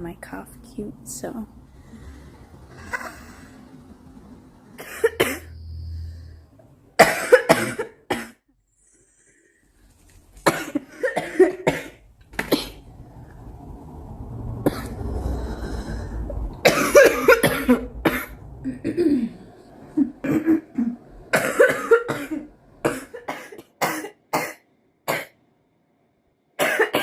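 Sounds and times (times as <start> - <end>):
woman coughing: 4.8 - 5.5, 7.0 - 8.4, 10.5 - 12.8, 16.7 - 19.4, 20.1 - 25.4, 26.6 - 27.0.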